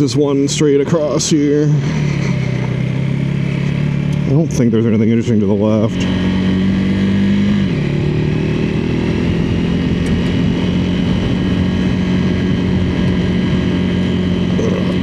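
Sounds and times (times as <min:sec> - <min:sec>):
gravel road noise: 0:00.0 - 0:15.0
motorcycle engine accelerating: 0:00.0 - 0:15.0
wind noise: 0:08.7 - 0:15.0.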